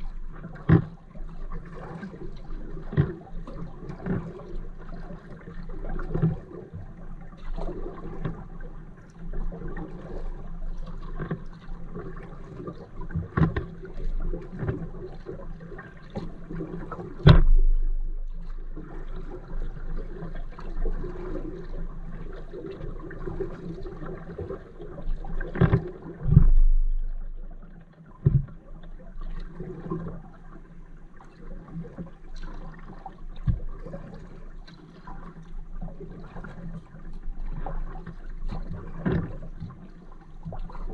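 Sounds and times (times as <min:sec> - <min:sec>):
kayak paddle strokes: 0:11.2 - 0:21.8, 0:22.6 - 0:28.6
sharp knocks: 0:17.2 - 0:18.6.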